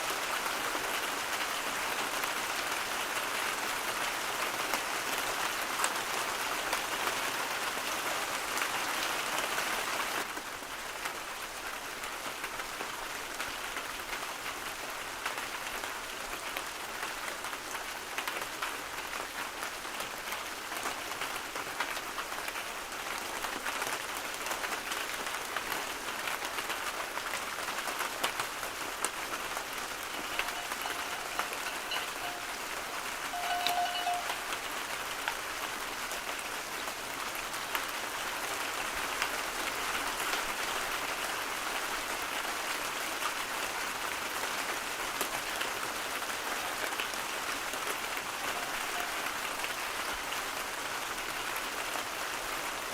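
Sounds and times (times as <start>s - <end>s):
steady rain: 0.0s - 52.9s
faint thin tone: 30.0s - 34.6s, 48.4s - 49.5s.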